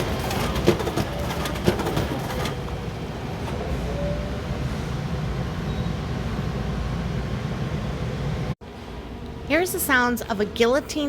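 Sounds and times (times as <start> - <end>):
printing machine clatter and hum: 0.0 - 6.0.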